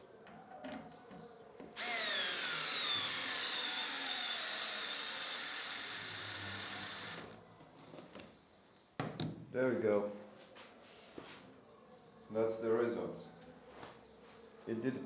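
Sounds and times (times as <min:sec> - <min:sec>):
cordless screwdriver motor whine: 0:01.8 - 0:07.4.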